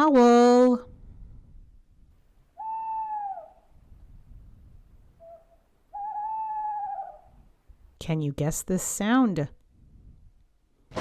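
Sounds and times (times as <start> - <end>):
owl hooting: 2.5 - 3.8, 5.2 - 7.4.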